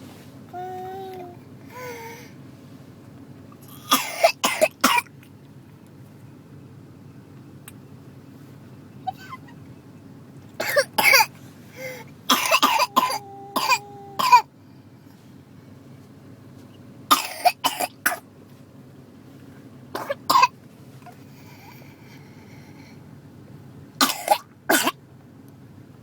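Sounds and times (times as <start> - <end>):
girl coughing harshly: 3.8 - 5.1, 10.6 - 11.3, 12.3 - 14.5, 17.1 - 18.2, 20.0 - 20.5, 24.0 - 25.0.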